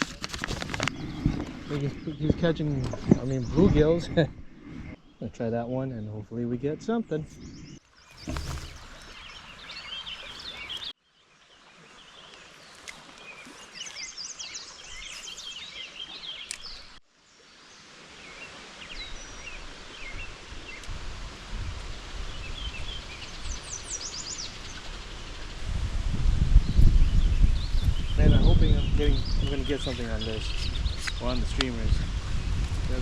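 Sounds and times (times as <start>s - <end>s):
small birds chirping: 0.1s - 17.0s, 21.8s - 25.8s, 26.5s - 33.0s.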